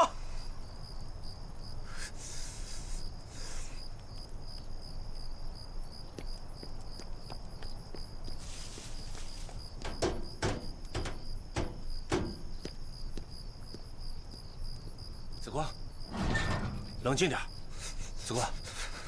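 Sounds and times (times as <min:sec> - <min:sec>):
crickets chirping: 0:00.0 - 0:19.0
hissing rustles: 0:08.4 - 0:12.6.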